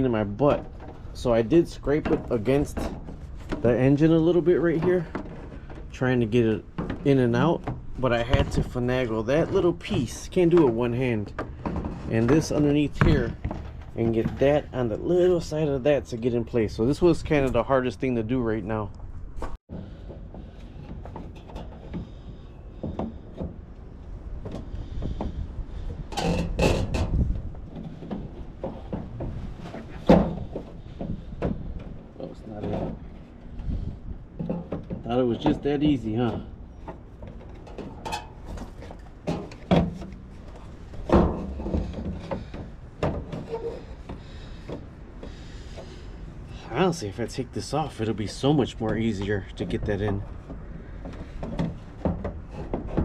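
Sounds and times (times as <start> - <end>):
knocks and rattles: 0.0 - 17.5, 19.4 - 46.2, 47.7 - 53.0
plastic scraping and rubbing: 48.2 - 53.0.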